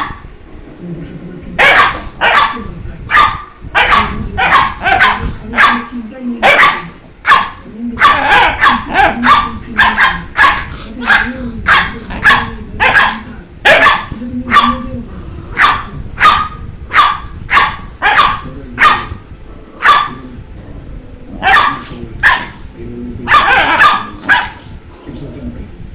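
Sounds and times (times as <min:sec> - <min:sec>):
dog barking: 0:00.0 - 0:00.2, 0:01.6 - 0:14.9, 0:15.6 - 0:19.2, 0:19.8 - 0:20.2, 0:21.4 - 0:22.6, 0:23.2 - 0:24.6.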